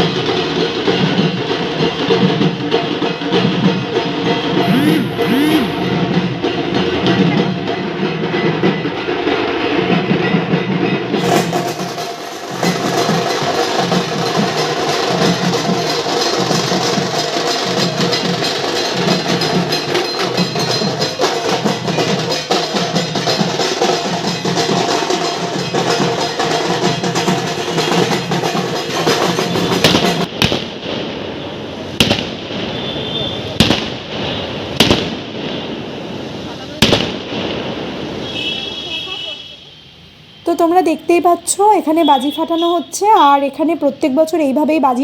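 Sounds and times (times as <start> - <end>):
drums beaten in dense rhythm: 0.0 - 30.5.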